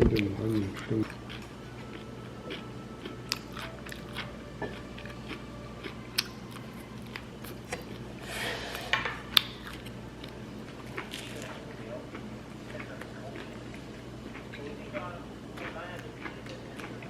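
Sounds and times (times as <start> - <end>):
person chewing: 0.0 - 17.0.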